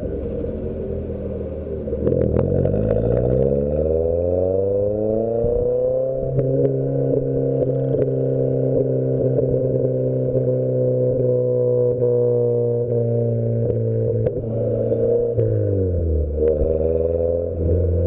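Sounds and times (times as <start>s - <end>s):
exhaust cracks: 0.0s - 8.2s
car engine revving: 0.0s - 18.0s.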